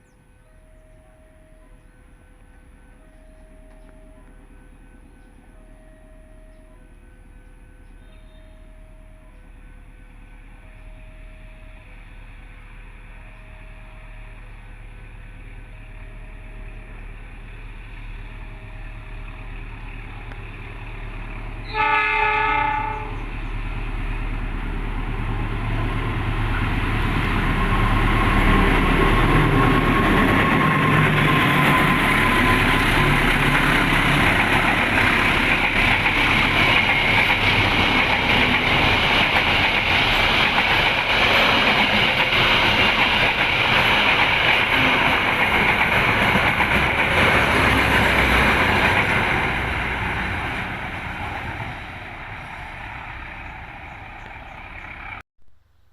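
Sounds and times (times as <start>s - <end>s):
train passing: 0.0s - 55.2s
train horn: 7.8s - 9.5s, 21.6s - 23.4s
wheels clattering on rails: 25.3s - 55.2s.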